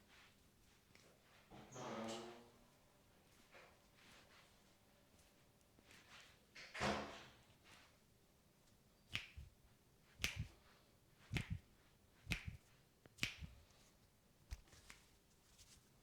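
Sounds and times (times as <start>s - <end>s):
fingers snapping: 9.1s - 9.5s, 10.2s - 10.6s, 11.3s - 11.6s, 12.3s - 12.6s, 13.2s - 13.6s.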